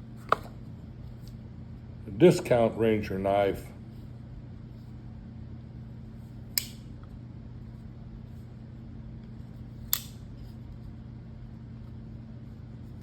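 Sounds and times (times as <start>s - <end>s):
steady low hum: 0.0s - 13.0s
folding knife blade locking clicks: 9.9s - 10.2s.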